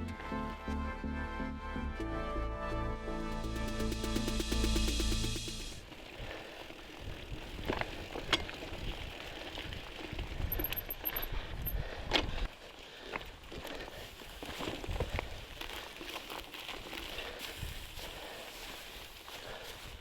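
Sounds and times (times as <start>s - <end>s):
low rumble: 2.4s - 5.9s
bicycle clicks and rattles: 5.8s - 19.3s.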